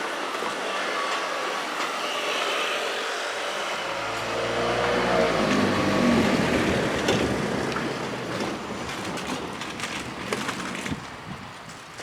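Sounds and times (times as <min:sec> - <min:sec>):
electric train running by: 0:00.1 - 0:10.3
wheels clacking over rail joints: 0:03.8 - 0:12.0.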